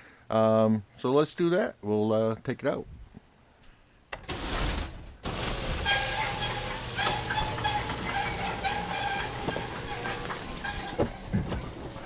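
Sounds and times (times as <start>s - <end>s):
rapid rattling clatter: 4.2s - 12.0s.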